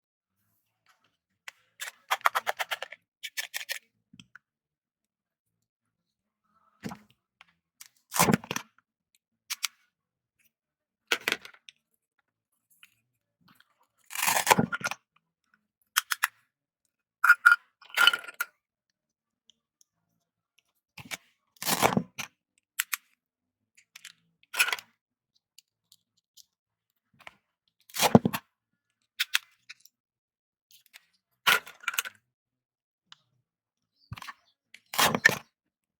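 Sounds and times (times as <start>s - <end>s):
toy knife cutting toy food: 1.8s - 3.8s.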